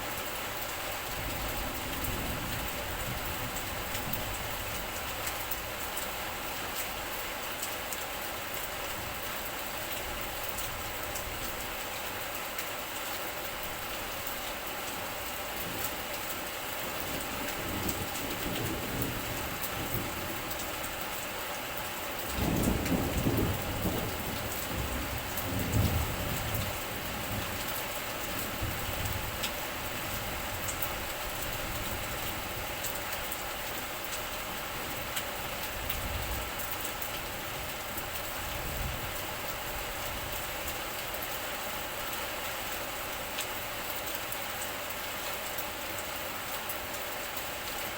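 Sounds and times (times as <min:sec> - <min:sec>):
steady rain falling: 0:00.0 - 0:47.9
thunder rumbling: 0:22.3 - 0:27.6.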